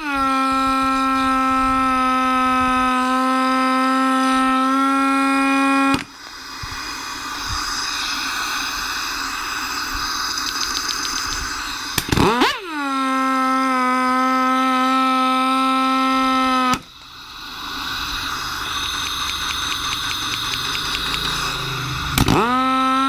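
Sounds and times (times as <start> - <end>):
air impact wrench motor whining: 0.0 - 23.0
air hissing: 4.2 - 12.8, 15.5 - 23.0
sharp clicks: 10.2 - 12.3, 18.8 - 21.5.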